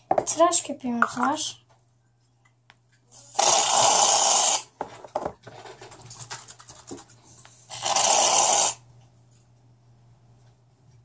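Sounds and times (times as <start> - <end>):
faint crackles and taps: 2.4 - 3.0.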